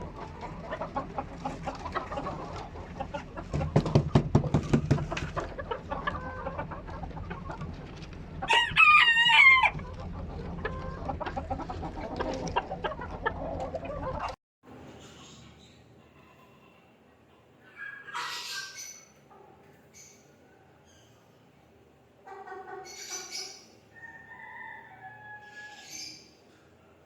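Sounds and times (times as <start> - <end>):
chickens clucking: 0.0 - 14.4, 17.4 - 20.5, 22.2 - 26.6
rooster crowing: 8.5 - 9.8, 23.9 - 26.1.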